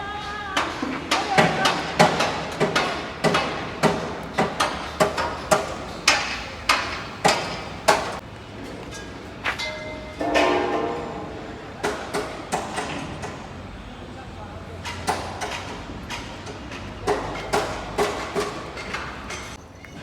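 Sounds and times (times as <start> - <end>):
hammer blows with ringing: 4.4 - 8.2.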